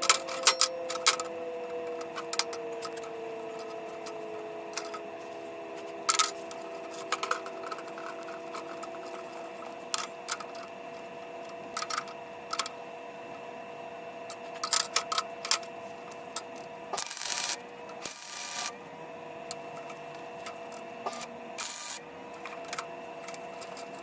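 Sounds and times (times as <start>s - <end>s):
steady machine hum: 0.0s - 24.0s.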